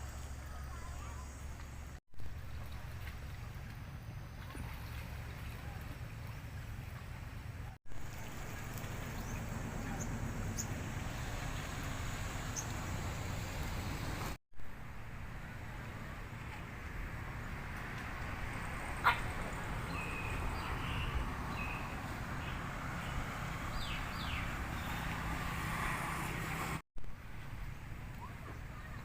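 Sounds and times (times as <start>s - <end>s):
waves: 0.0s - 29.0s.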